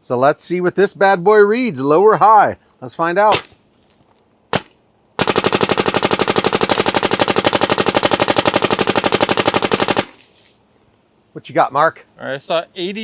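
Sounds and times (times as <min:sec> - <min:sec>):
paintball gun rapid firing: 0:03.3 - 0:03.6, 0:04.5 - 0:10.2.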